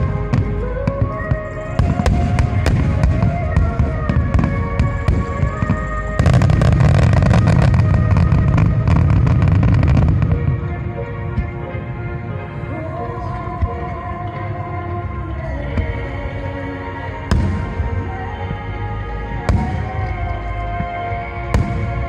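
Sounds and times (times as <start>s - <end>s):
rapid barrage of explosions: 0.0s - 10.8s
music with sustained tones: 0.0s - 22.0s.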